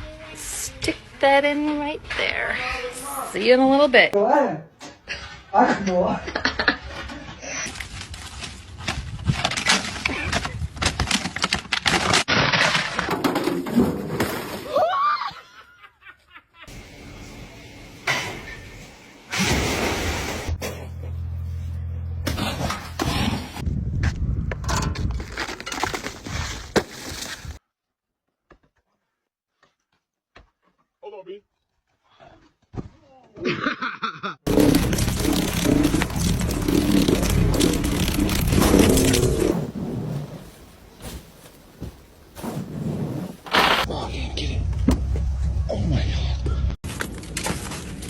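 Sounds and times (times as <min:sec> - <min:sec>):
ice cracking and crunching: 0:34.5 - 0:43.9.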